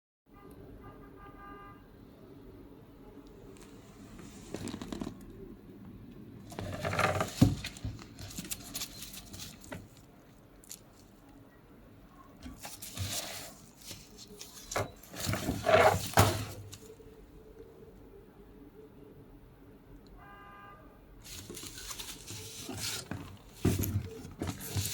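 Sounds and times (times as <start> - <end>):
packaging rustling and scraping: 6.5 - 10.1, 12.4 - 16.9, 21.2 - 24.9.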